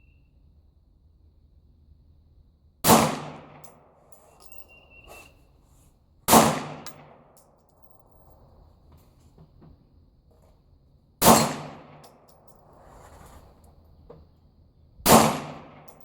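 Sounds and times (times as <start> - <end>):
pistol shots with echo: 2.8 - 3.8, 6.3 - 7.3, 11.2 - 12.0, 15.0 - 16.0.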